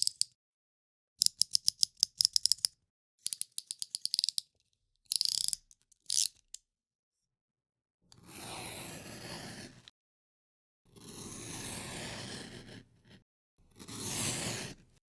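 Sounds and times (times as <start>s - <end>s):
utility knife ratcheting clicks: 0.0s - 0.3s, 1.2s - 4.4s, 5.1s - 6.6s.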